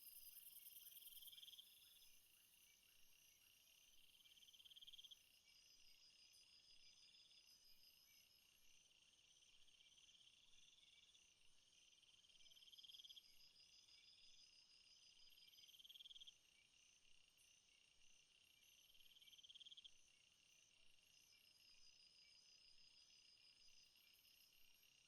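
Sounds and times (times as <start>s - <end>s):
insects trilling: 0.0s - 3.0s.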